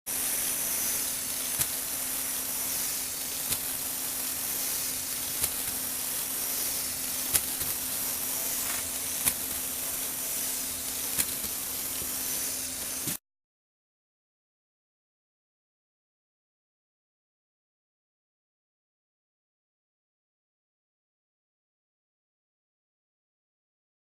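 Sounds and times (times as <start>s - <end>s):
electric motor and gearbox humming: 0.1s - 13.2s.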